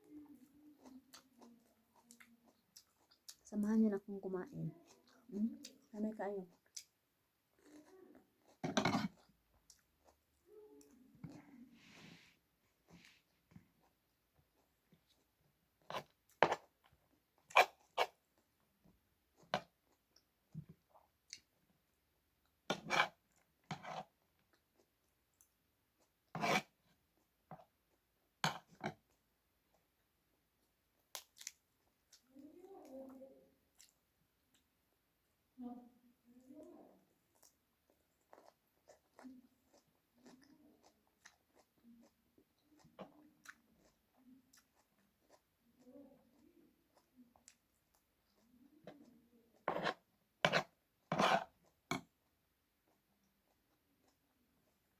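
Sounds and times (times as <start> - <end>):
person chewing food: 0.0 - 3.8, 6.5 - 33.0, 33.6 - 34.8, 37.0 - 54.9
eating crunches and scrapes: 22.7 - 27.7, 37.3 - 51.9.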